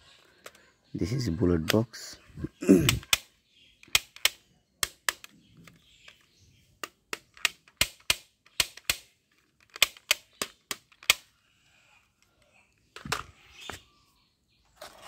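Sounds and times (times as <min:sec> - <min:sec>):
plastic toy gun clicks: 0:02.9 - 0:11.3.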